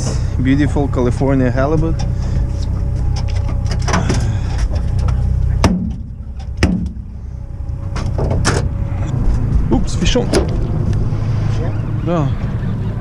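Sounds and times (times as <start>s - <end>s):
boat motor humming: 0.0s - 13.0s
sharp knocks: 5.6s - 7.0s.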